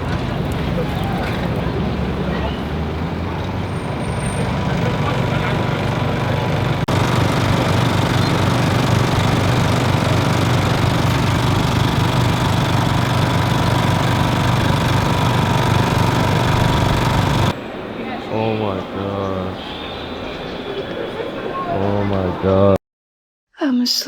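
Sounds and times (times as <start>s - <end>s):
engine running: 0.0s - 17.6s.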